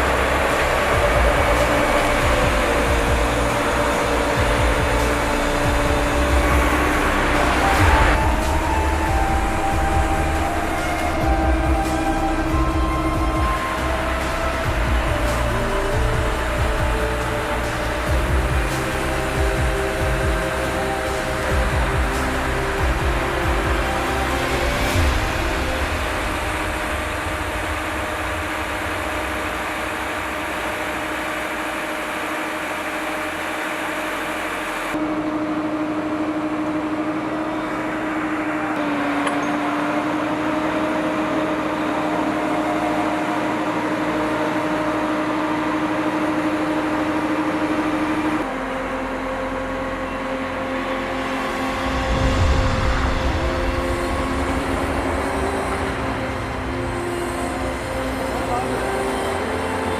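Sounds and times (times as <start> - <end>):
crane engine and hydraulic hum: 0.0 - 59.9.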